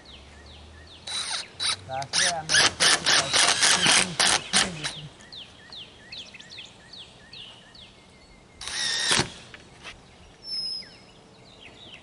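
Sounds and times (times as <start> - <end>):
songbird whistling: 10.4 - 12.0.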